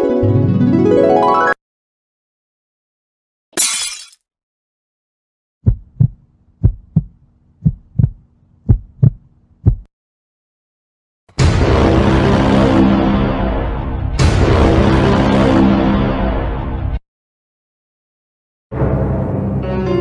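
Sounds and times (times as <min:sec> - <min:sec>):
heartbeat thumps: 0:05.6 - 0:09.9.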